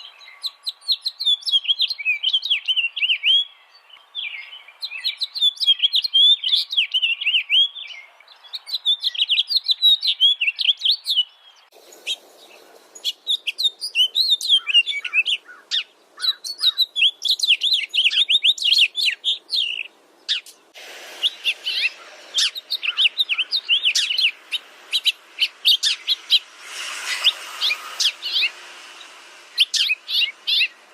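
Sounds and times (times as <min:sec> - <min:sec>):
songbirds chirping and trilling: 0:00.0 - 0:30.9
faint background hiss: 0:11.5 - 0:30.9.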